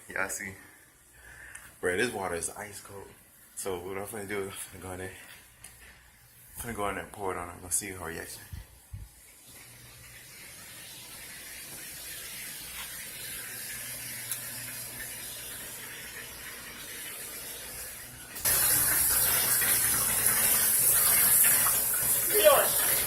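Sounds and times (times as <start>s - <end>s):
shower water spraying: 8.3s - 23.0s.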